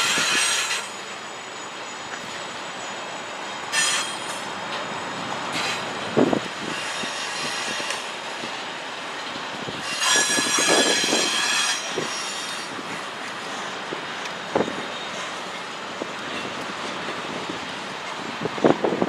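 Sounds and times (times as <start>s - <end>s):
train wheels squealing: 0.0s - 3.1s, 3.7s - 5.9s, 6.6s - 8.2s, 9.8s - 12.8s
freight train rumbling past: 0.0s - 19.0s.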